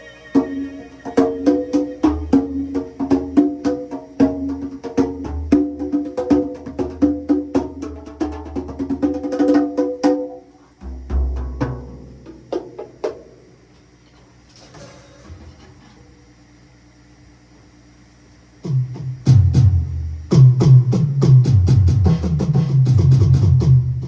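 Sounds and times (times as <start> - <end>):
percussion solo music: 0.0 - 13.5, 18.6 - 24.0.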